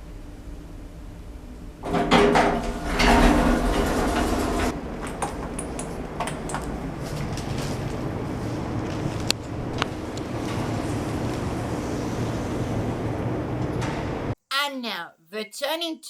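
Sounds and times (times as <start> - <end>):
low rumble: 0.0 - 14.4
lift doors rattling: 1.8 - 11.8.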